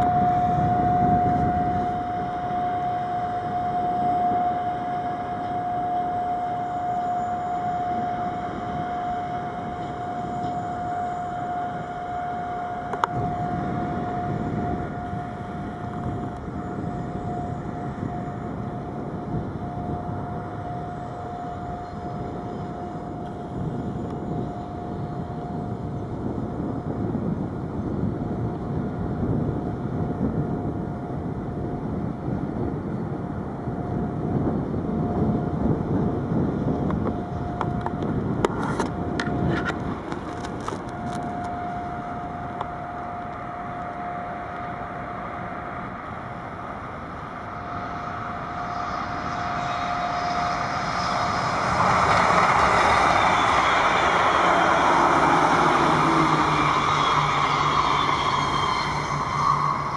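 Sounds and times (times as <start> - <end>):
low rumble: 0.0 - 59.9
thin steady whine: 0.0 - 59.9
train wheels on rails: 34.2 - 59.9.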